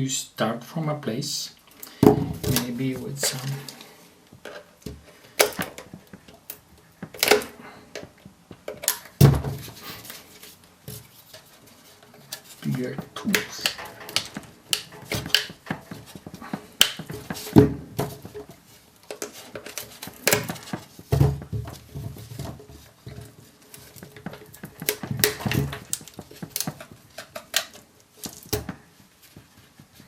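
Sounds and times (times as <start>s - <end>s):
tools prying plastic case: 4.5s - 9.7s, 13.2s - 18.5s, 19.1s - 28.8s.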